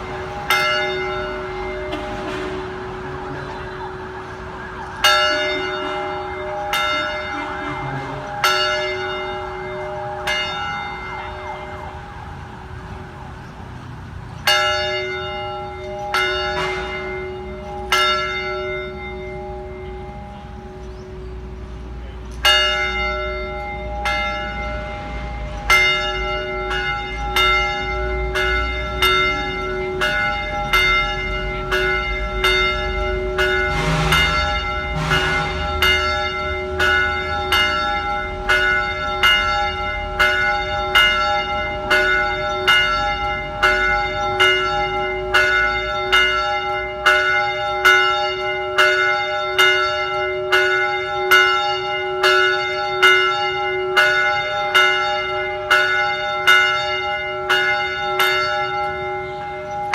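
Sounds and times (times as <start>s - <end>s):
church bell tolling: 0.0s - 59.9s.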